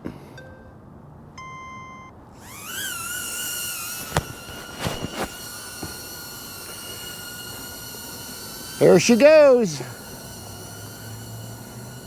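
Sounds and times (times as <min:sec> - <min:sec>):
drone propellers whining: 0:02.4 - 0:12.0.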